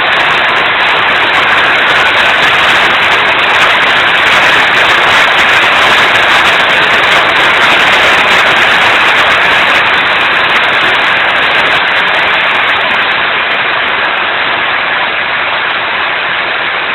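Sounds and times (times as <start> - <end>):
heavy rain pouring: 0.0 - 16.9.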